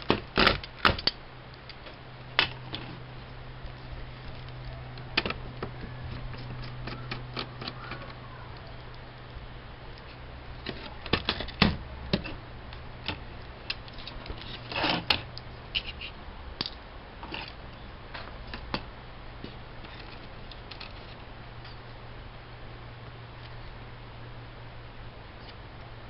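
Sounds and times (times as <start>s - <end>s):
steady low hum: 0.0s - 26.0s
scraping rustle: 1.6s - 9.3s, 9.9s - 16.2s, 17.2s - 22.0s.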